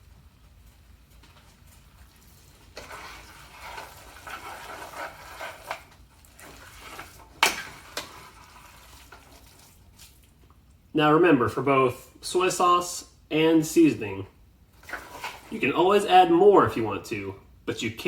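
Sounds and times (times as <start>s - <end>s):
spatula scraping frying pan: 2.5s - 10.0s, 14.8s - 15.7s.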